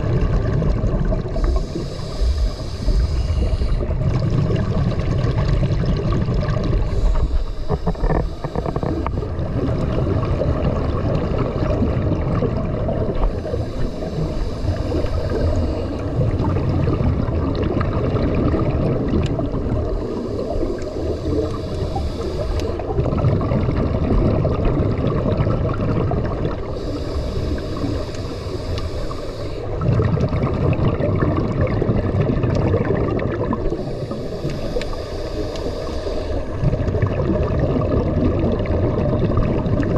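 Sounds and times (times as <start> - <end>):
exhaled air bubbling underwater: 0.0 - 39.9
regulator inhale hiss: 1.2 - 4.7, 6.7 - 10.6, 13.2 - 16.6, 19.7 - 23.0, 26.6 - 29.8, 33.6 - 36.9.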